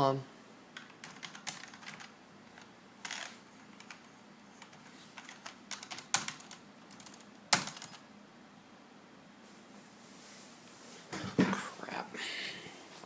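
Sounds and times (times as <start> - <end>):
computer keyboard keys clicking: 0.8 - 2.1, 3.7 - 8.0.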